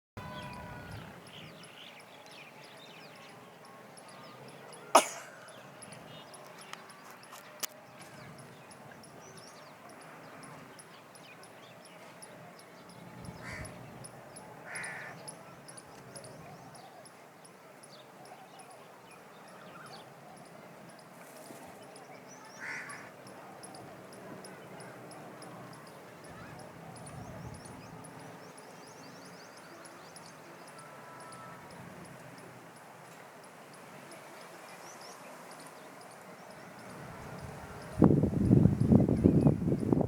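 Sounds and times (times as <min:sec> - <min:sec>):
birds chirping: 0:00.2 - 0:21.2.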